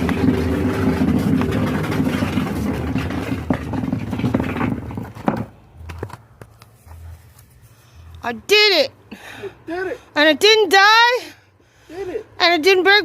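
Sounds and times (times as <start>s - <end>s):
engine running: 0.0s - 8.2s.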